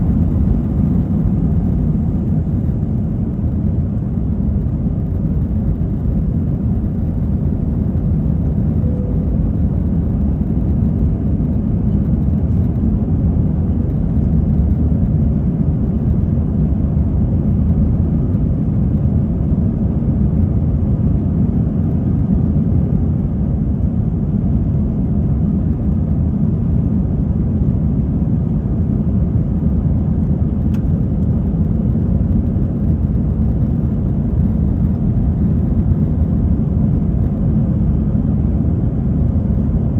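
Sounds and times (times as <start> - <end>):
aircraft cabin engine rumble: 0.0 - 39.9.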